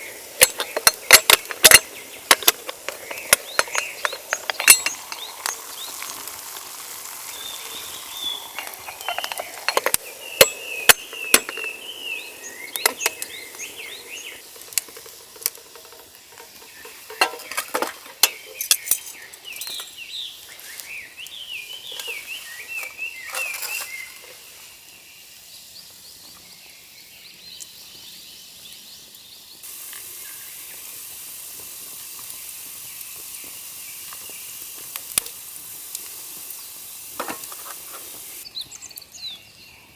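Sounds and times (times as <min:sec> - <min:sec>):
food sizzling: 0:00.0 - 0:25.8, 0:29.5 - 0:38.5
steady hiss: 0:00.0 - 0:39.8
utensils knocking against pan: 0:00.4 - 0:06.2, 0:08.6 - 0:11.8, 0:12.7 - 0:19.9.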